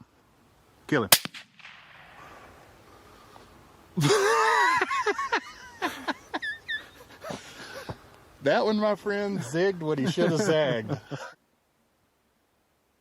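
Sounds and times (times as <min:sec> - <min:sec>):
rifle shot: 0:01.1 - 0:02.5.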